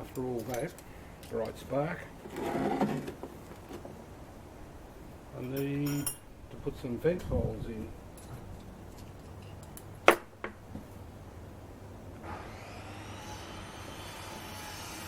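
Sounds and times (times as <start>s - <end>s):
small electric motor spinning: 12.2s - 15.0s.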